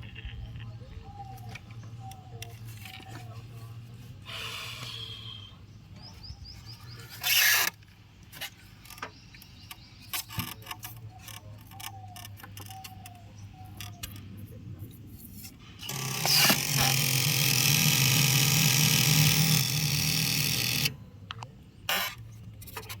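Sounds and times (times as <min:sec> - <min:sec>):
generator running: 0:15.8 - 0:21.0.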